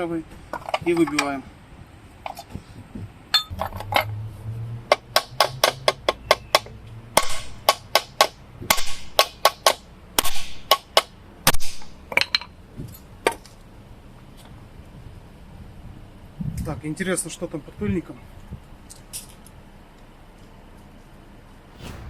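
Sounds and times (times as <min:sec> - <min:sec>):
hammer striking metal drift: 0:04.9 - 0:09.6.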